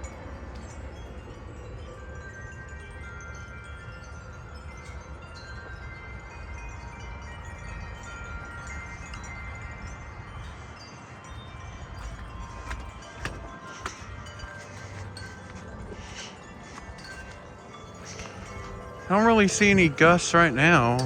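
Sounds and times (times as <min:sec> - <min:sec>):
gusty wind: 0:00.0 - 0:21.0
wind chimes ringing: 0:00.0 - 0:21.0.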